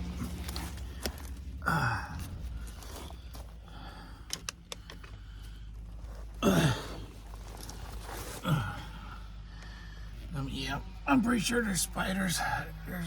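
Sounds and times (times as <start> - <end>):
man grunting: 1.6 - 2.2, 6.4 - 7.0, 8.4 - 9.0.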